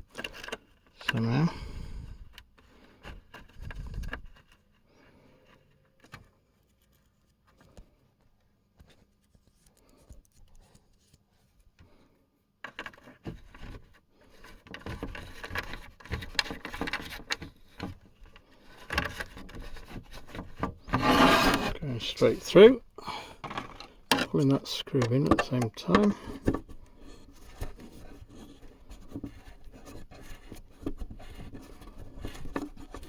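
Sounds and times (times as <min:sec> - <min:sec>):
scraping and rubbing of parts: 0:12.6 - 0:33.0.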